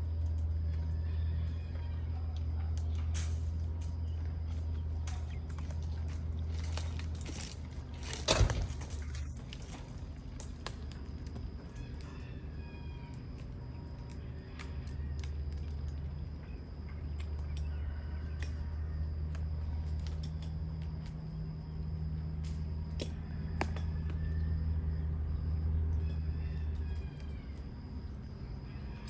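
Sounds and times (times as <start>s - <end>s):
steady low rumble: 0.0s - 17.7s.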